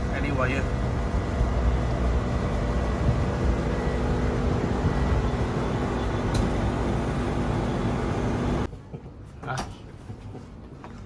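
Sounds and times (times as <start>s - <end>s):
machinery hum and whir: 0.0s - 8.7s.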